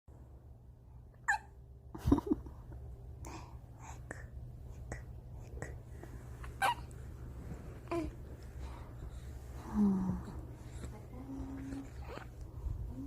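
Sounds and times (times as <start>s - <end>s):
baby hiccuping: 6.5s - 6.9s.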